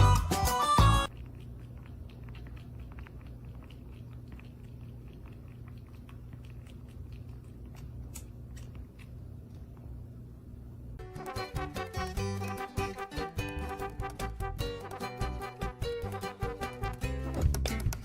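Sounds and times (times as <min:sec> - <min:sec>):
steady low hum: 0:01.0 - 0:17.2
chewing crunches and clicks: 0:01.1 - 0:10.0.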